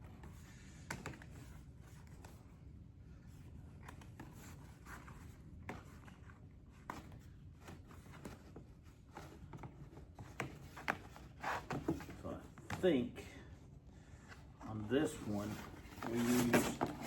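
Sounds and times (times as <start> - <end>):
faint rustling: 10.9 - 17.0.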